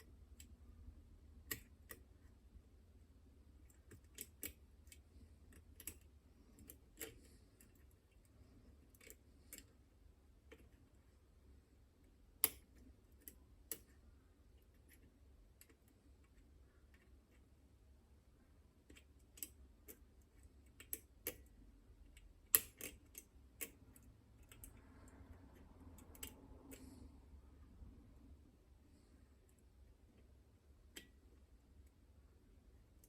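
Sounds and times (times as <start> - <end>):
lock picks clicking: 12.4 - 12.6, 22.1 - 23.8.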